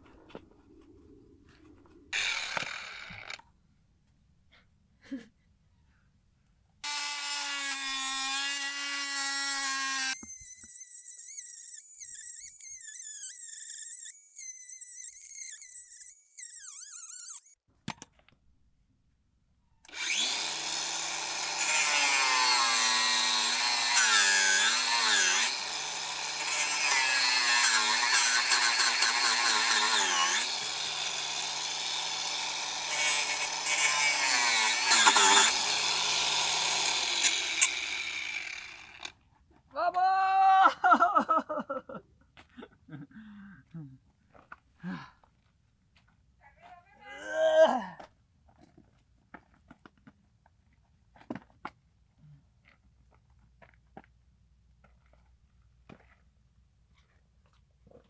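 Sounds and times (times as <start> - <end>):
electric power tools running: 2.2 - 3.4, 19.9 - 24.0, 24.8 - 27.0, 27.6 - 39.1.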